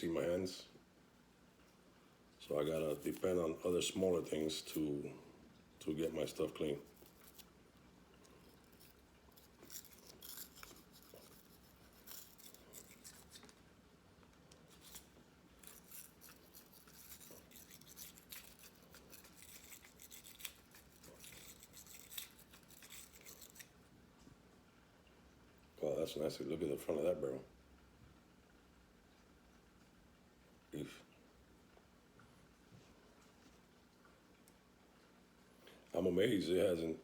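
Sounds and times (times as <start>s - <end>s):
brush scrubbing pistol barrel: 8.6s - 13.6s, 14.7s - 23.7s.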